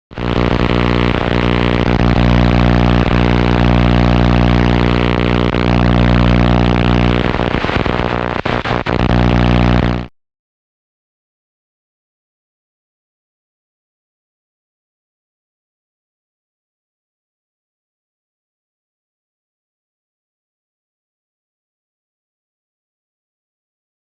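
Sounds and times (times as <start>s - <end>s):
electrical buzzing hum with crackle: 0.1s - 10.1s.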